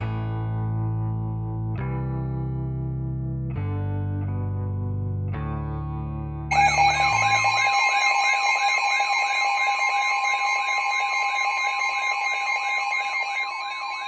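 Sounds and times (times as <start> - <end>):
electronic alert tone warbling: 6.5 - 14.0.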